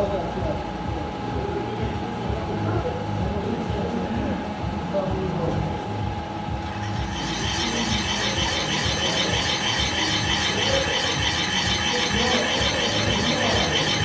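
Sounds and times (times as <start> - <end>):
machine hum: 4.4 - 14.0
boring tool scraping steel: 6.7 - 14.0.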